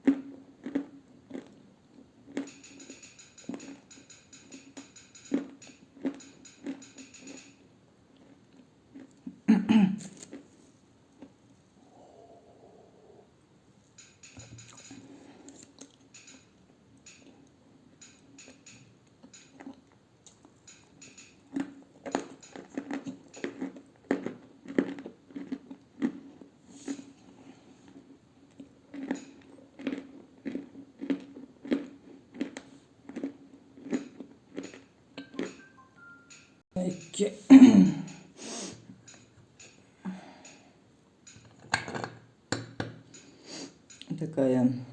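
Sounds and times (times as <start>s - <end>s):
person chewing with crisp crunches: 0.0s - 7.1s, 8.1s - 12.3s, 14.4s - 16.3s, 18.4s - 35.8s.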